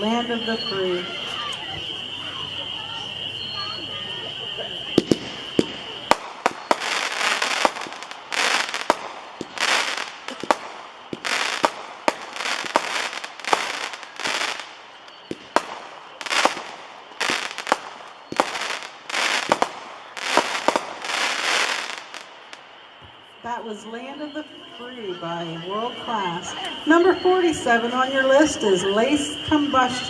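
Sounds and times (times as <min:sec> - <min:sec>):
firework shells bursting: 0:04.9 - 0:22.9.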